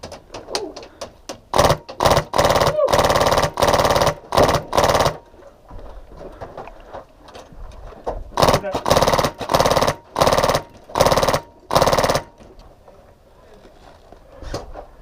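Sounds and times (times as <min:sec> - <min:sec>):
airsoft gun firing full auto: 0:01.5 - 0:05.2, 0:08.4 - 0:12.4.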